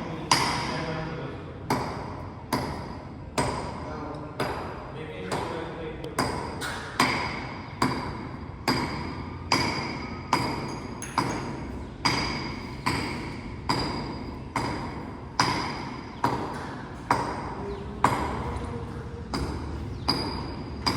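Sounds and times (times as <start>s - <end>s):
hammer ringing on metal: 6.2s - 18.6s, 19.3s - 20.9s.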